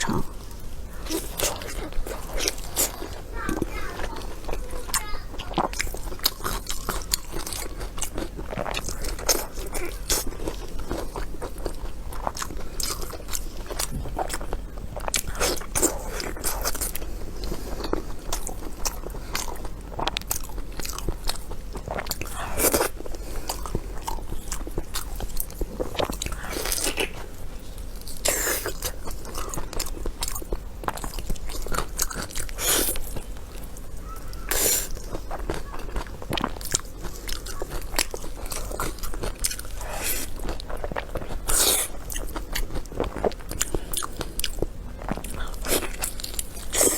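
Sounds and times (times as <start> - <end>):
person biting and chewing food: 0.0 - 46.9.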